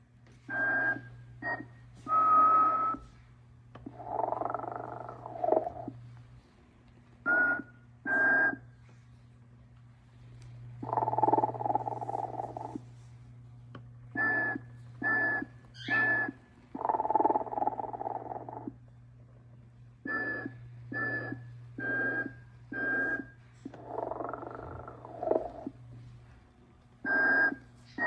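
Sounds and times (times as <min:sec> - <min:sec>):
steady low hum: 0:00.0 - 0:28.0
snores: 0:03.9 - 0:06.0, 0:23.8 - 0:25.7.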